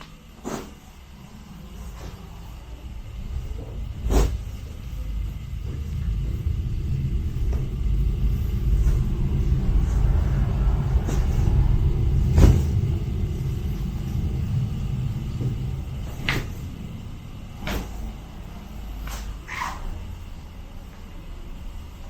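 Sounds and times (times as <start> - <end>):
low rumble: 0.0 - 22.0.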